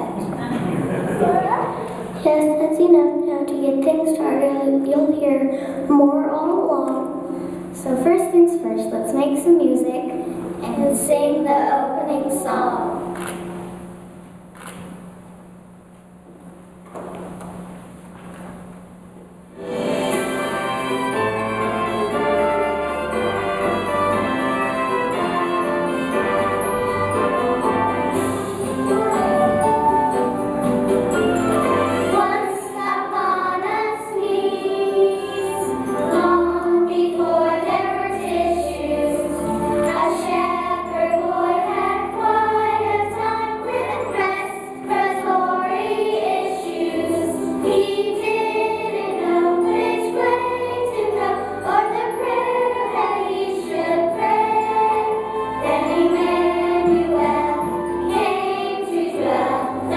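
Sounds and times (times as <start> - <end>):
instrumental accompaniment: 19.5 - 59.9
choir singing: 19.6 - 59.9.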